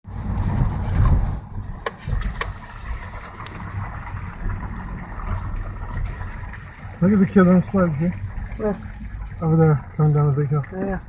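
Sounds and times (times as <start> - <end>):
car engine and tyres rumbling: 0.0 - 11.0.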